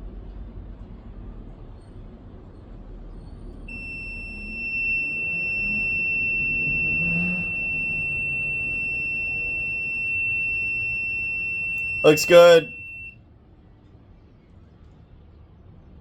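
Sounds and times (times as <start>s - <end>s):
alarm buzzer continuous tone: 3.7s - 13.0s.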